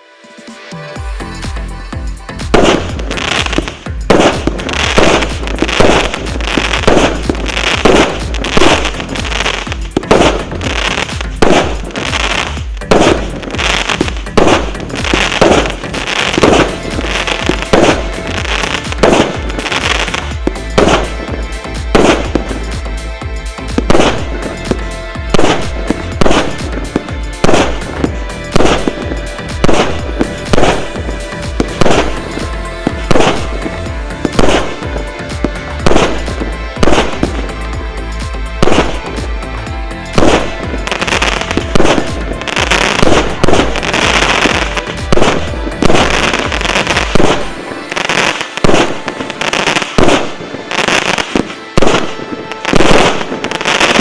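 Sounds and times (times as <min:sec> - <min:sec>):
music playing: 0:00.0 - 0:54.0
fireworks bangs: 0:00.5 - 0:54.0.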